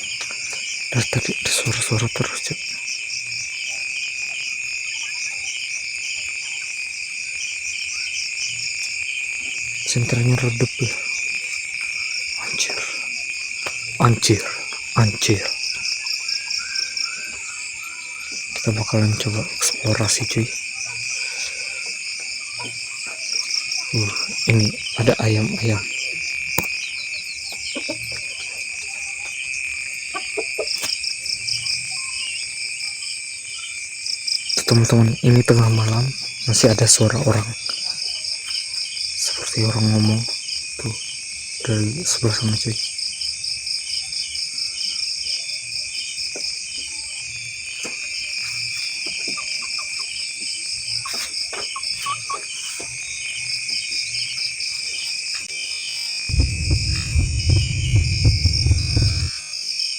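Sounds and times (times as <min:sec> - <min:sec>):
crickets chirping: 0:00.0 - 0:59.9
bass-heavy music: 0:56.3 - 0:59.3.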